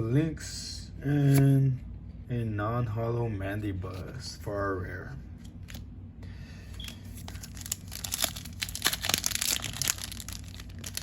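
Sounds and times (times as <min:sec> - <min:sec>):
foil wrapper crinkling: 0:07.0 - 0:11.0.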